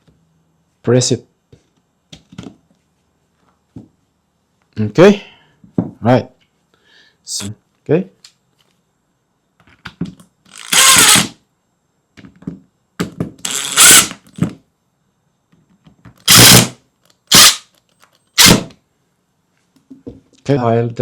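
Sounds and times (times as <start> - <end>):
power tool motor bursts: 10.5 - 11.4, 13.4 - 14.2, 16.2 - 17.7, 18.4 - 18.7.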